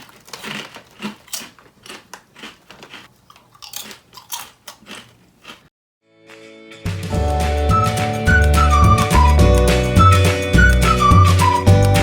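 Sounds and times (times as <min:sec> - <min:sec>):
person chewing potato chips: 0:00.0 - 0:05.7.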